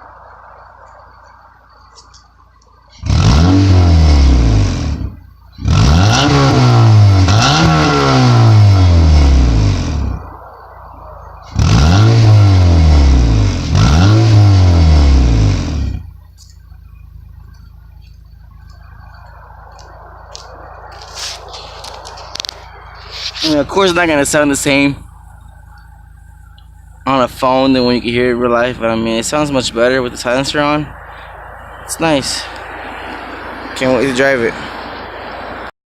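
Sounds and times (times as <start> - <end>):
car engine idling: 0.0 - 35.7
car engine revving: 0.0 - 35.7.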